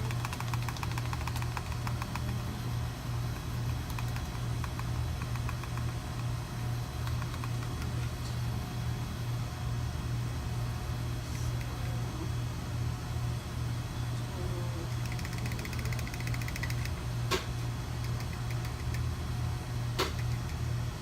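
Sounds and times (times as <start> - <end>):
faint rapid clicking: 0.0 - 2.4, 3.3 - 6.3, 7.0 - 8.2, 14.9 - 17.0, 18.0 - 19.1.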